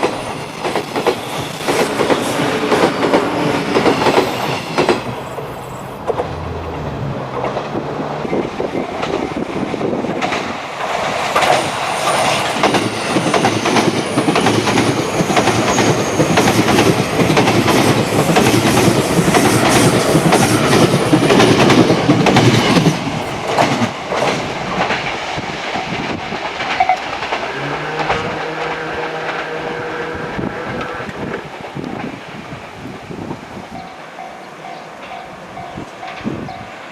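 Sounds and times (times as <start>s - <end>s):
train wheels clacking: 0.0s - 32.3s, 33.8s - 36.9s.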